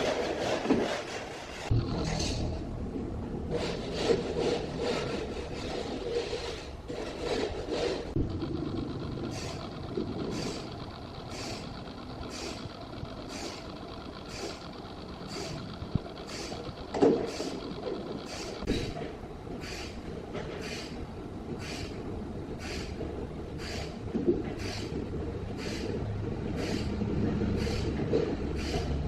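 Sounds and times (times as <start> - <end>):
rasping saw strokes: 0.0 - 1.7, 3.5 - 8.2
steady mechanical noise: 0.0 - 29.0.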